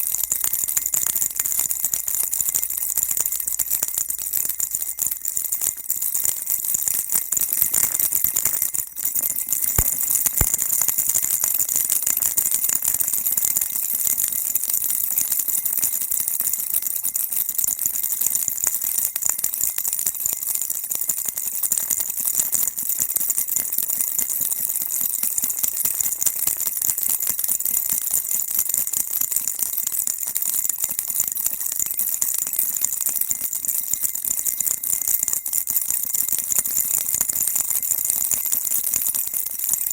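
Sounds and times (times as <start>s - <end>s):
baby rattle shaking: 0.0s - 12.7s, 36.3s - 39.9s.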